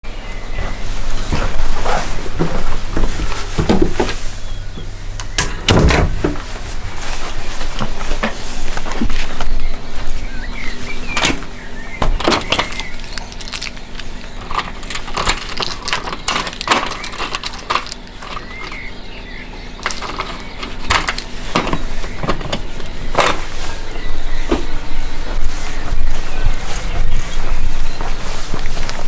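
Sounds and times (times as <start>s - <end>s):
low steady hum: 0.1s - 29.0s
knocks and clatters: 1.2s - 9.6s, 11.1s - 23.8s.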